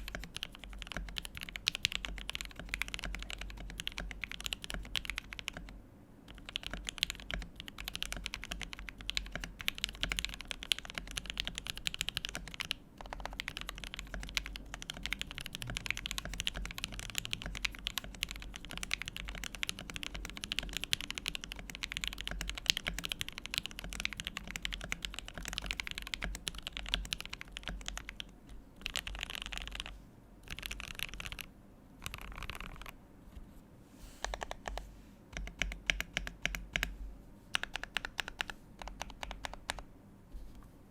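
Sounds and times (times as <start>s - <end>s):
fast typing on mechanical keyboard: 0.0s - 33.0s, 34.2s - 36.9s, 37.5s - 39.9s.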